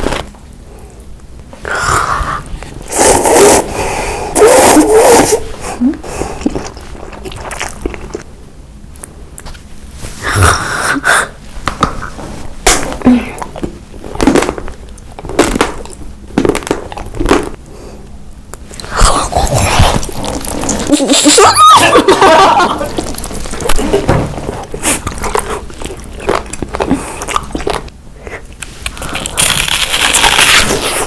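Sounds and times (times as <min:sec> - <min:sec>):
crunchy chewing of food: 0:06.2 - 0:08.4, 0:12.8 - 0:21.4, 0:22.2 - 0:31.0.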